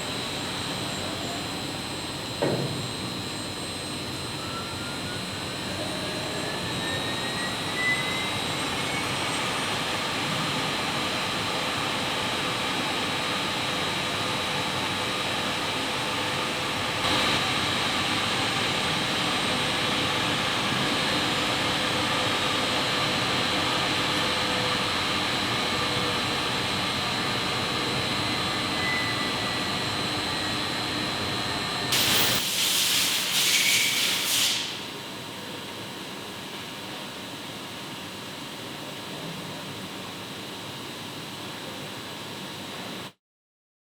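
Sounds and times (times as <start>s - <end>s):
grinding machine hiss and whine: 0.0s - 43.0s
sharp hissing burst: 32.0s - 34.8s.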